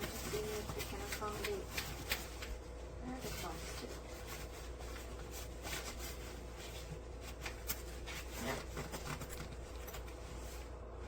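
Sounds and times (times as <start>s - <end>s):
steady low hum: 0.0s - 11.0s
suitcase rubbing and clicking: 7.7s - 10.1s.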